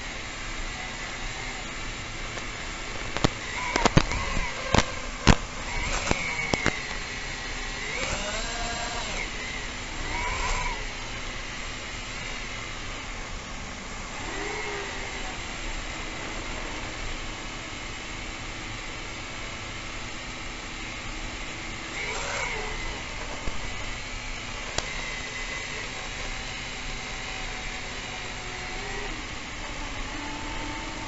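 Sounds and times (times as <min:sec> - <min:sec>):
drone motors and propellers: 0:00.0 - 0:31.0.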